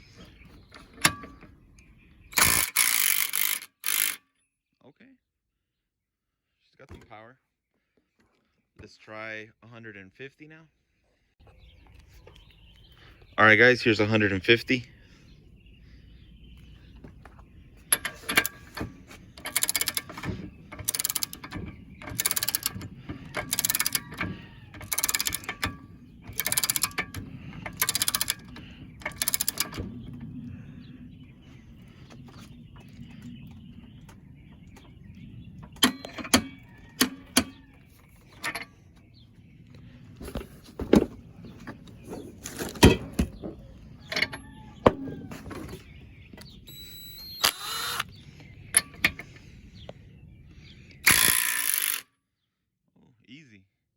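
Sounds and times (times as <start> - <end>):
wrench ratcheting: 2.3 - 4.2, 17.9 - 18.8, 19.4 - 24.2, 24.8 - 25.7, 26.3 - 29.8, 51.1 - 52.0
steel tools clicking and knocking: 2.4 - 4.2, 17.9 - 29.9.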